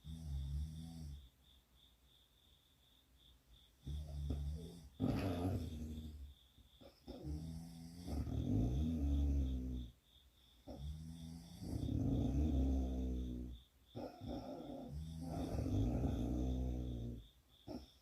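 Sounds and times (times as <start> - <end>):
person snoring: 0.0 - 1.2, 3.8 - 6.2, 7.1 - 9.9, 10.7 - 17.9.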